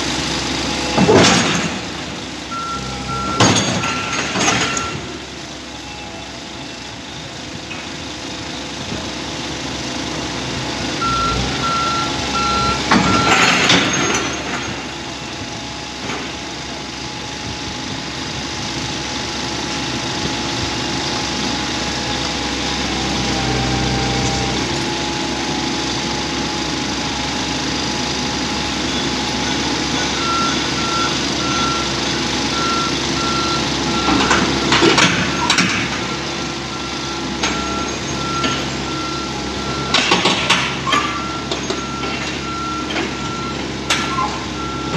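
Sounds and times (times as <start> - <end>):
excavator engine running: 0.0 - 44.9
travel alarm beeping: 2.5 - 7.2, 11.0 - 14.2, 28.8 - 34.5, 36.1 - 44.9.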